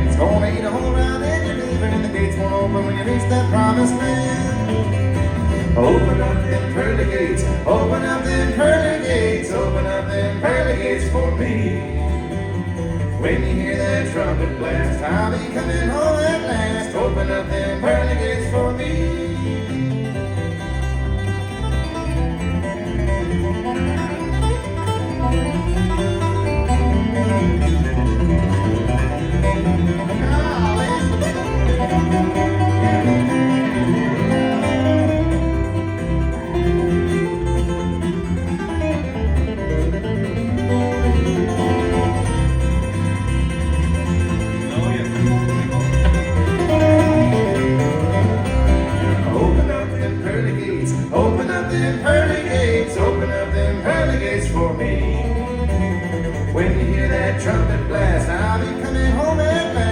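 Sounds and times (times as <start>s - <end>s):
acoustic guitars flatpicking: 0.0s - 59.9s
upright bass: 0.0s - 59.9s.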